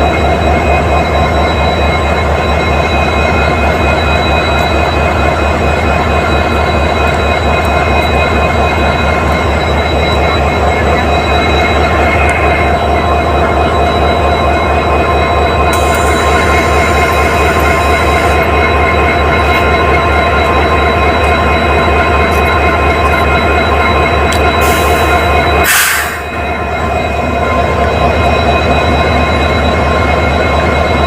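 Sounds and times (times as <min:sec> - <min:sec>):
whining tones: 0:00.0 - 0:31.0
locomotive diesel engine idling: 0:07.6 - 0:27.8.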